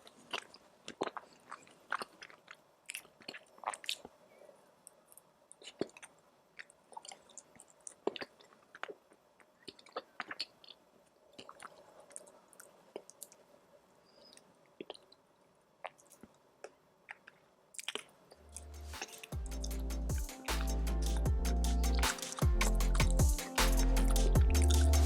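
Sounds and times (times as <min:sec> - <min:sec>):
close chewing mouth clicks: 0:00.0 - 0:04.2, 0:04.9 - 0:10.8, 0:11.4 - 0:13.4, 0:14.2 - 0:15.2, 0:15.8 - 0:20.0
music: 0:18.5 - 0:25.0.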